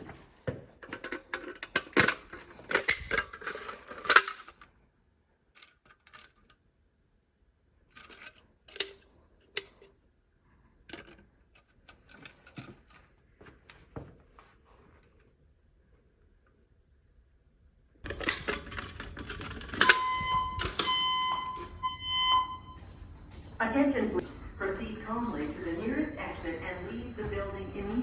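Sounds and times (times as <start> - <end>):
hard objects clattering and clicking: 0.8 - 4.7.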